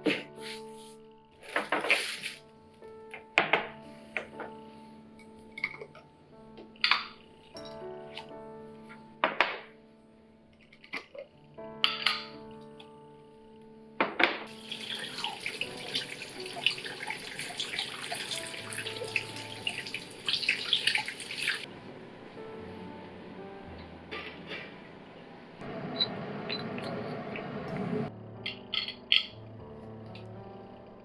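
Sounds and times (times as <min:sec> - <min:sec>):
dishes clinking: 0:05.6 - 0:06.1, 0:10.9 - 0:12.4, 0:28.5 - 0:29.4.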